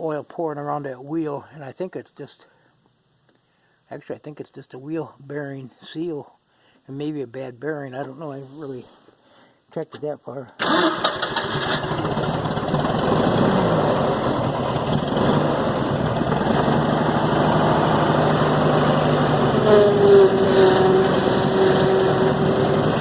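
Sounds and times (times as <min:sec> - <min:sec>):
loader engine idling: 0:10.6 - 0:23.0.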